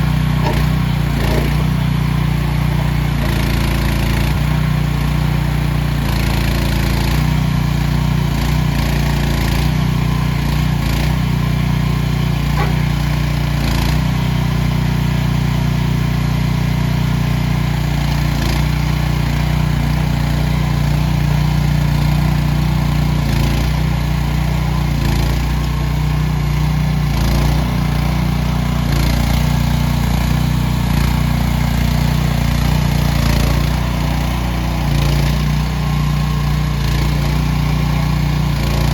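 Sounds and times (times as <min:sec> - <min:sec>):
small excavator engine running: 0:00.0 - 0:38.9
light knocks: 0:00.4 - 0:01.6.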